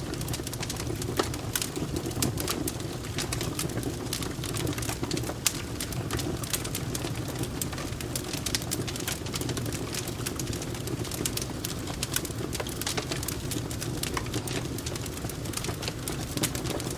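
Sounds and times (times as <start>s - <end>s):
wood fire crackling: 0.0s - 16.9s.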